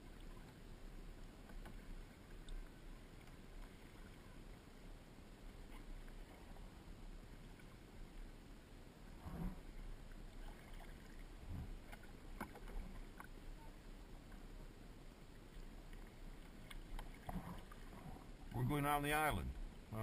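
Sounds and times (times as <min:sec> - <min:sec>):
faint water noise: 0:00.0 - 0:20.0
paddle splashes: 0:01.4 - 0:04.6, 0:05.5 - 0:08.3, 0:09.1 - 0:14.6, 0:15.4 - 0:18.8.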